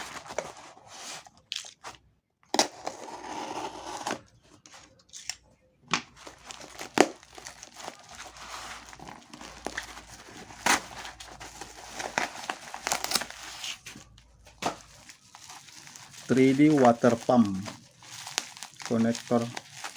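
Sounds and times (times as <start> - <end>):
packaging crinkling and rustling: 6.1 - 19.9.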